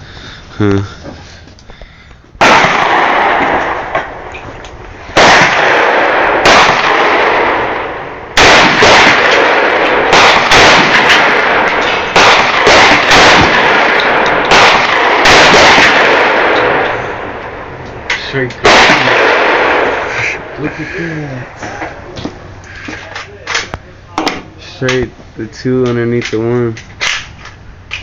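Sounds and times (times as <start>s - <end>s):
pistol shots echoing: 2.4s - 4.2s, 5.2s - 17.5s, 18.6s - 20.2s.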